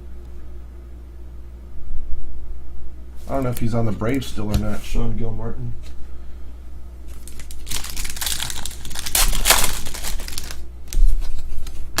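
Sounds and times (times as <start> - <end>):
wrapper crinkling and tearing: 7.1 - 11.7.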